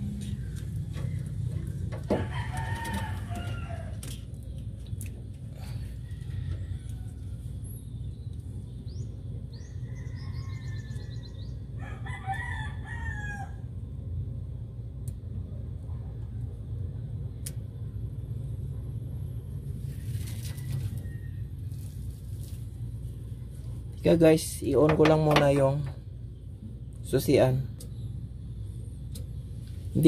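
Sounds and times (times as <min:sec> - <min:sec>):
steady low hum: 0:00.0 - 0:30.0
rooster crowing: 0:02.0 - 0:04.1, 0:05.6 - 0:07.8, 0:09.8 - 0:13.7, 0:19.9 - 0:21.5.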